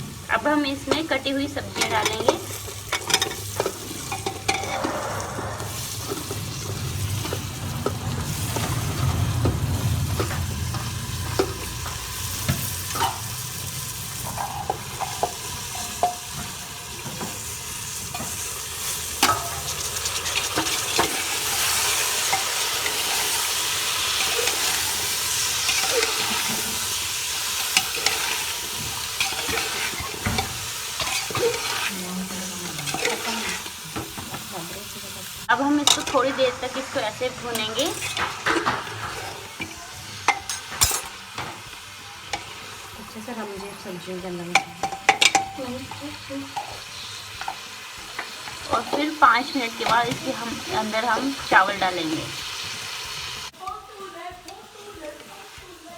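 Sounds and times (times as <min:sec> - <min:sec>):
vegetables sizzling in hot oil: 0:00.0 - 0:55.9
low rumble: 0:04.4 - 0:13.6.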